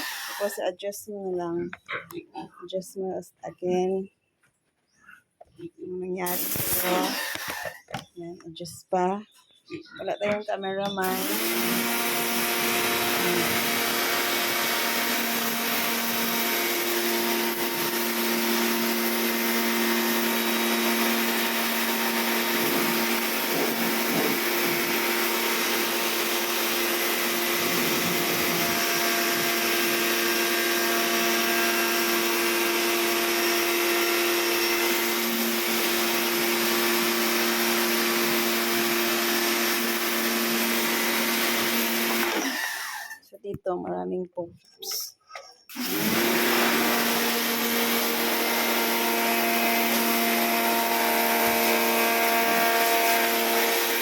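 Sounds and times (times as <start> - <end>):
pressure washer motor humming: 0.0 - 0.6, 6.3 - 7.8, 10.9 - 43.2, 45.7 - 54.0
high-pressure water spray hiss: 6.3 - 7.1.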